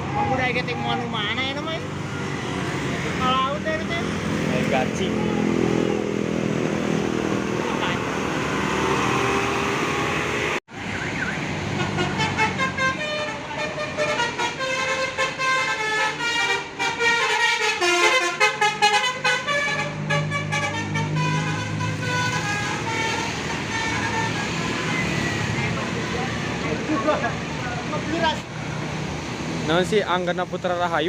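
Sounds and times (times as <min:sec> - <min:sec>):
bus engine: 0:00.0 - 0:31.0
traffic noise: 0:00.0 - 0:31.0
musical air horn tune: 0:11.8 - 0:24.6.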